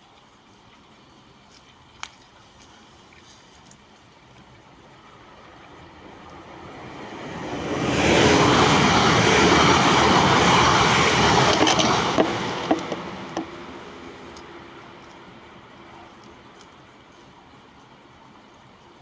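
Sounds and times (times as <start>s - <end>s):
passing train rumble: 4.9s - 16.5s.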